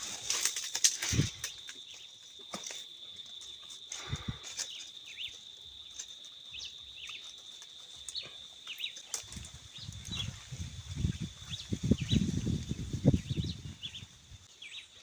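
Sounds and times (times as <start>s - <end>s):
birds chirping: 3.4s - 15.0s.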